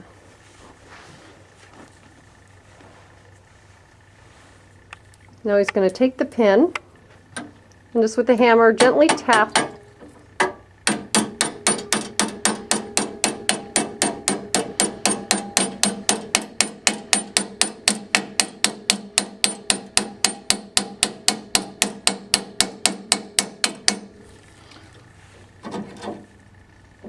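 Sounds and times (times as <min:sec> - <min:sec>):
hammer tapping metal pin: 0:08.8 - 0:09.8, 0:10.4 - 0:24.1.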